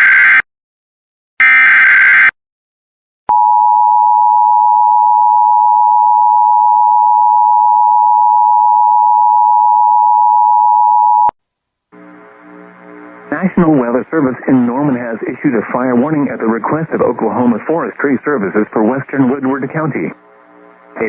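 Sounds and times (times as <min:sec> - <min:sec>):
steady electronic attention tone: 0:12.0 - 0:18.2.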